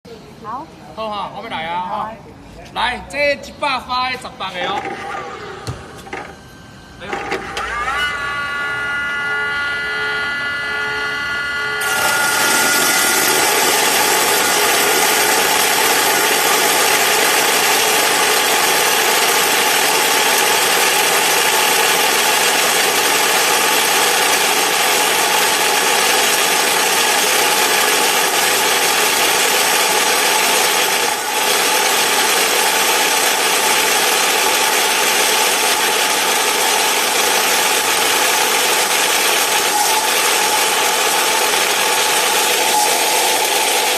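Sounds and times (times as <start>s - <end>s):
faint saw whine: 6.3s - 18.3s
saw cutting metal: 7.4s - 43.9s.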